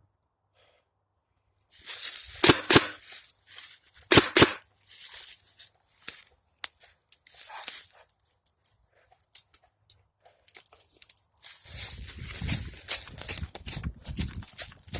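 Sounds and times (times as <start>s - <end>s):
footsteps crunching dry leaves: 1.7s - 8.1s, 10.5s - 14.9s.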